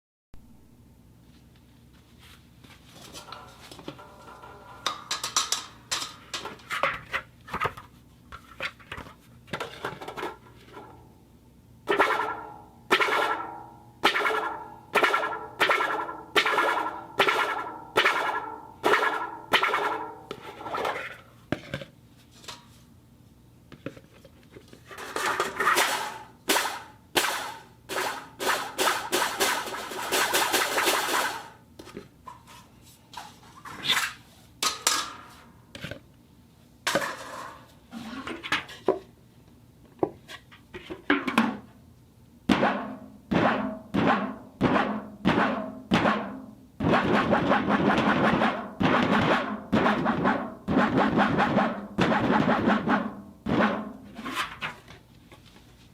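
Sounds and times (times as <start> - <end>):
metal rattling and scraping: 3.0 - 7.1, 24.7 - 26.8, 36.9 - 38.9.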